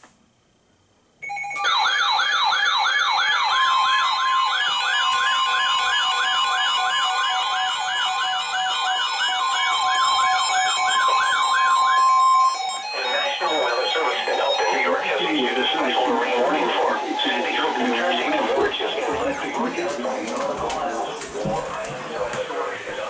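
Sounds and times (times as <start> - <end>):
fast repeating siren wail: 1.6 - 20.0.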